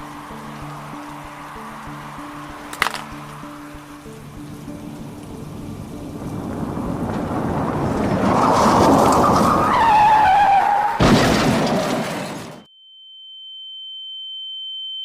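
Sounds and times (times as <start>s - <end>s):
car engine: 0.0s - 12.6s
loud car crash: 7.0s - 12.7s.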